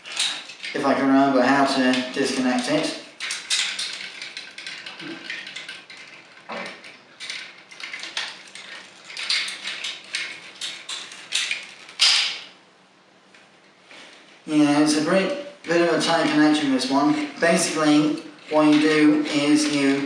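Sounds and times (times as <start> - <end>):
plastic clatter: 0.0 - 0.8, 1.9 - 12.6
plastic toy parts clicking and creaking: 0.0 - 12.6, 15.6 - 20.0.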